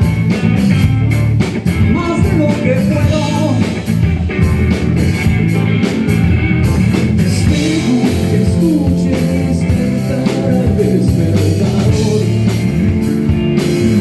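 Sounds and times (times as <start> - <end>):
rock band music: 0.0 - 14.0
sliding melody line: 5.1 - 14.0.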